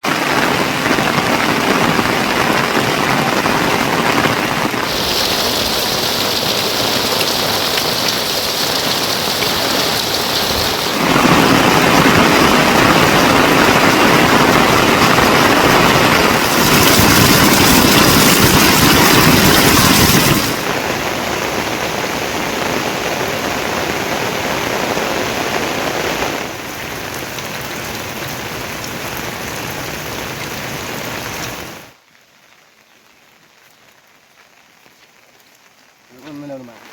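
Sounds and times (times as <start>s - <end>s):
heavy rain falling: 0.0s - 36.9s.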